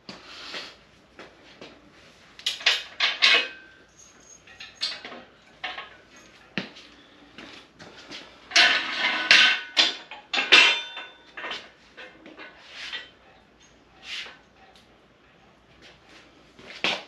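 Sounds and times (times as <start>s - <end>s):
metal crane parts clanking: 2.4s - 6.4s, 8.5s - 13.2s.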